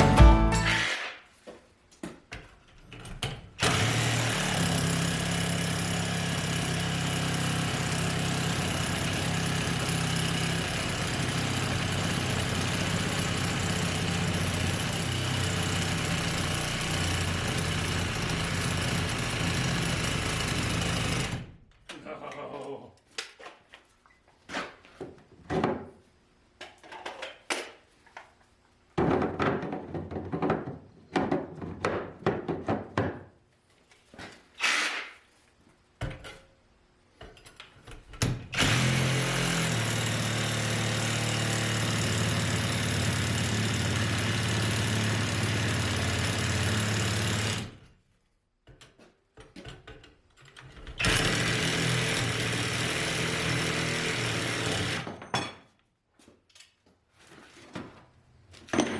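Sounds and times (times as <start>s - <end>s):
power tool running: 3.6s - 21.5s, 38.6s - 47.8s, 51.0s - 55.1s.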